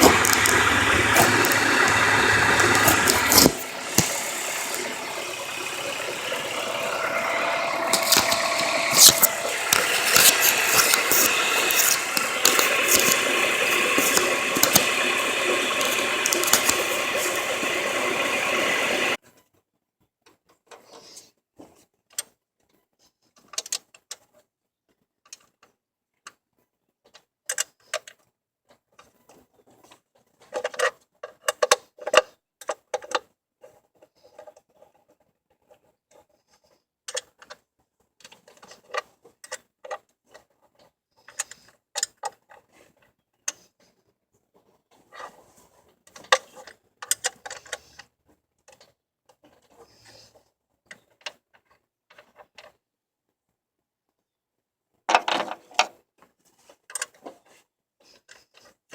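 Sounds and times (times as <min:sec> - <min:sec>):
engine knocking: 0:00.0 - 0:19.2.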